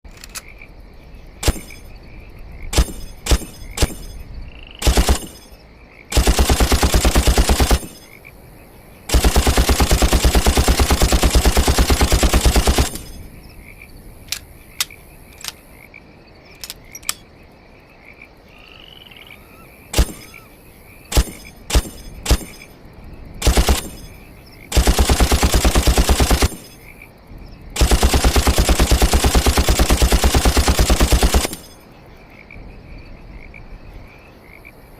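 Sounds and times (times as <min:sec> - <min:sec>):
machine gun firing: 0:02.7 - 0:04.0, 0:04.8 - 0:05.4, 0:06.1 - 0:08.0, 0:09.1 - 0:13.2, 0:20.0 - 0:20.3, 0:21.1 - 0:22.6, 0:23.4 - 0:24.1, 0:24.7 - 0:26.8, 0:27.8 - 0:31.8.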